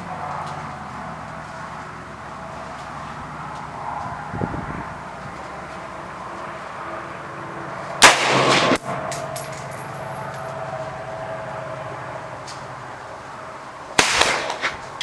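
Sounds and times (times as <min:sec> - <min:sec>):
rifle shot with echo: 0:08.0 - 0:09.0, 0:14.0 - 0:15.0
light clinks: 0:08.8 - 0:10.6.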